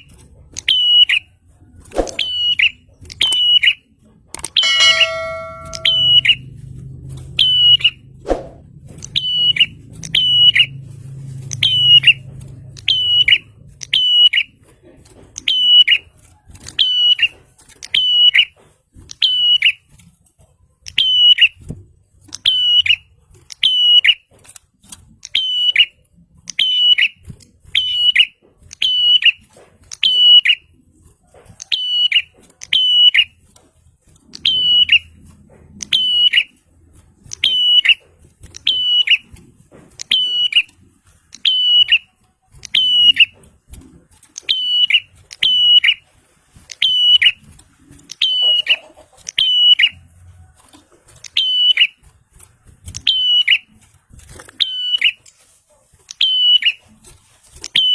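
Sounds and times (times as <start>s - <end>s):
bird sharp high call: 4.6s - 6.4s.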